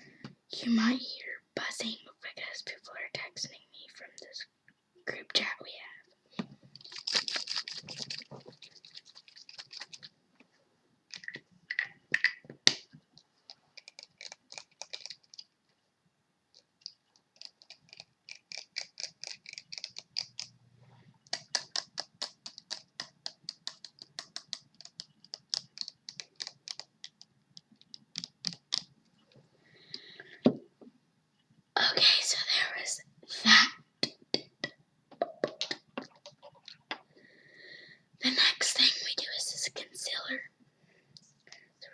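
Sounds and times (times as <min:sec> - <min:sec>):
fingers tapping on a phone: 0:21.3 - 0:28.9.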